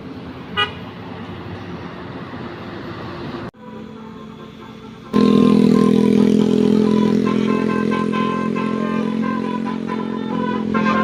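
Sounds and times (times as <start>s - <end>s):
faint traffic: 0.0s - 11.0s
bus horn playing a tune: 3.6s - 11.0s.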